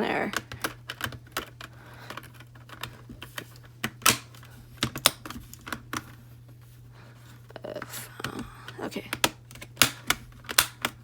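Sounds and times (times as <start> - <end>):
plastic keyboard clicks and taps: 0.3 - 6.0, 9.1 - 11.0.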